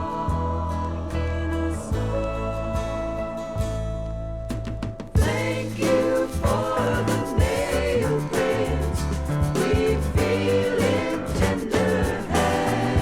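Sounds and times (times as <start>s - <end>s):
gospel band music: 0.0s - 13.0s
steady drum beat: 0.0s - 13.0s.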